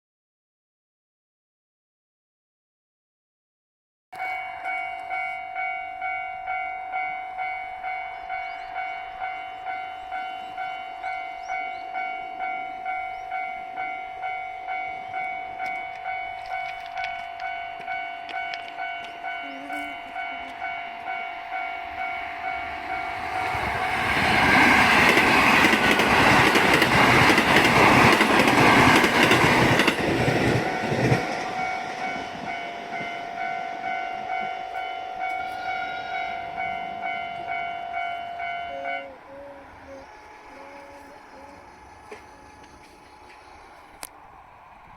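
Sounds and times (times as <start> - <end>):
level-crossing warning bell ringing: 4.2 - 44.0
train passing: 4.2 - 44.9.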